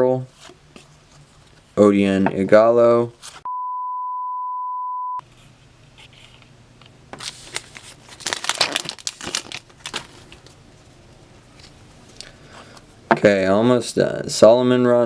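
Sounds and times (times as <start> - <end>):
steady high beep: 3.5 - 5.2
wrapper crinkling: 7.2 - 10.6.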